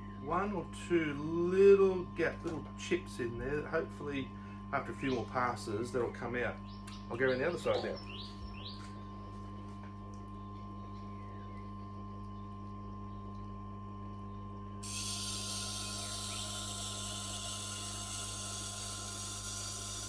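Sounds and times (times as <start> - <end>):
knife grinding hiss: 14.8 - 20.0
wet grinder humming: 14.8 - 20.0.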